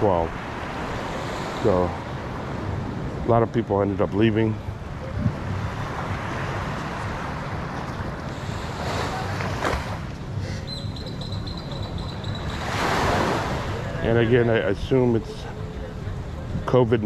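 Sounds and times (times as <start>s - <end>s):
wind buffeting microphone: 2.0s - 12.5s
surf washing onto beach: 12.4s - 14.9s.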